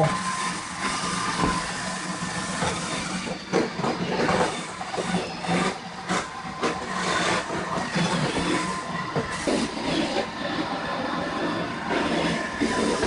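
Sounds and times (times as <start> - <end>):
robot vacuum whirring: 0.0 - 13.0.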